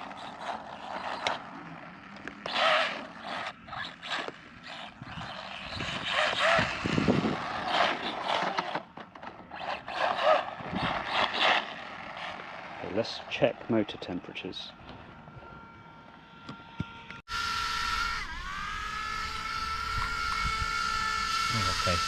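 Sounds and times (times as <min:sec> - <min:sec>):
tyres scrabbling over ground: 0:00.0 - 0:14.1
rc truck motor whining: 0:00.0 - 0:22.0.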